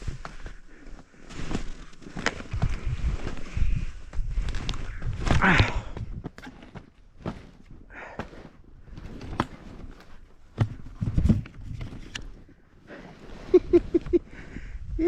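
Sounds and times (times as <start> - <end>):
skis and boots knocking: 5.1 - 12.5
snow crunching: 6.3 - 11.4, 12.0 - 14.5
hard breaths with voice: 7.8 - 9.0, 14.3 - 15.0.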